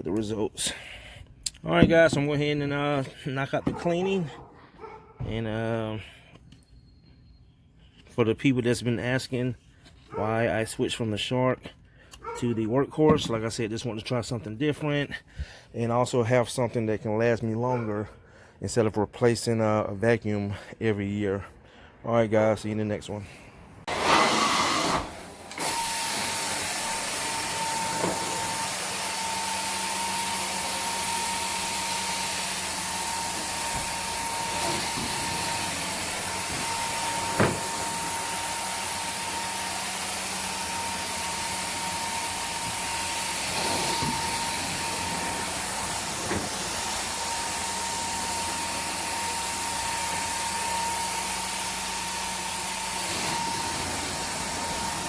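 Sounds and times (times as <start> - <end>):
carpet cleaner running: 23.9 - 55.0.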